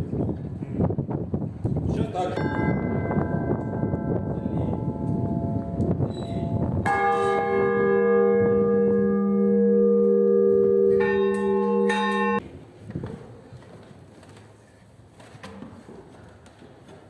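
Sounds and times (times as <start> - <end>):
deep church bell ringing: 2.4 - 12.4
higher-pitched bell struck: 2.4 - 12.4.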